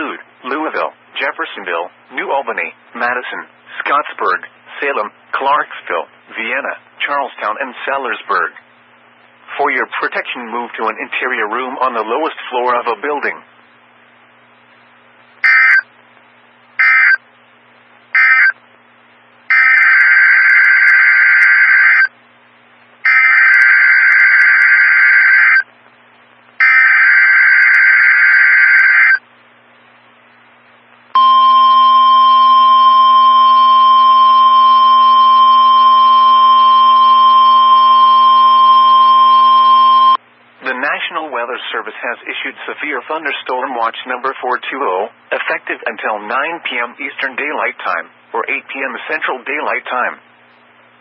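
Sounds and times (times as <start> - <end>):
steady alarm tone: 15.4 - 15.8, 16.8 - 17.2, 18.2 - 18.6, 19.5 - 22.1, 23.1 - 25.6, 26.6 - 29.2, 31.2 - 40.2.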